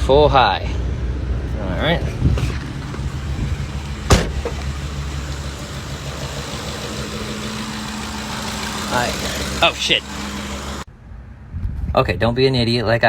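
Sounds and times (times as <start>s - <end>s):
car engine idling: 1.4s - 10.9s.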